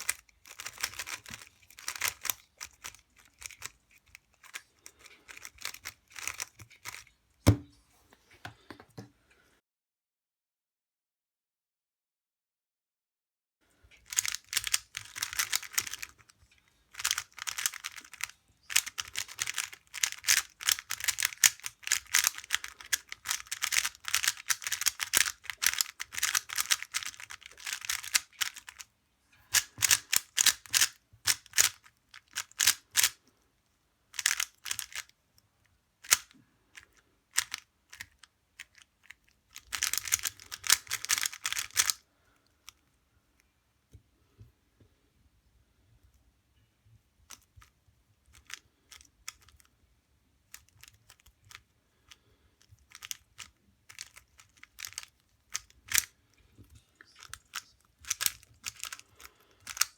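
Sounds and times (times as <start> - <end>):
puzzle cube clacking: 0.0 - 7.6, 14.0 - 28.9, 29.5 - 33.2, 34.1 - 35.1, 36.0 - 42.0, 48.3 - 49.7, 52.7 - 59.9.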